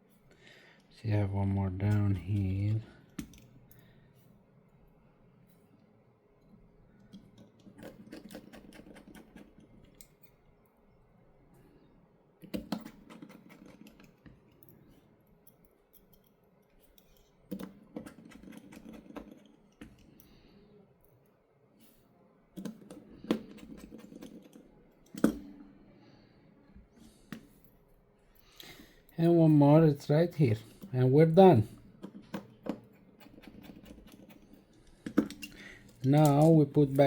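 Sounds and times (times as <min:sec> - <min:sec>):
screwdriver clicking and scraping: 0:01.8 - 0:03.5, 0:07.1 - 0:10.4, 0:12.4 - 0:14.6, 0:15.5 - 0:20.3, 0:22.6 - 0:25.4, 0:32.0 - 0:37.0.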